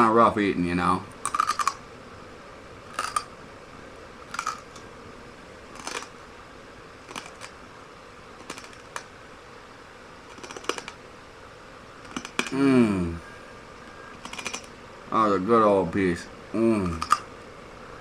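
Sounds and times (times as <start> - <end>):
glass crunching between teeth: 1.2 - 1.8, 2.9 - 3.3, 4.3 - 4.8, 5.8 - 6.1, 7.1 - 7.6, 8.4 - 9.0, 10.3 - 11.0, 12.1 - 12.6, 14.2 - 14.7, 16.9 - 17.3.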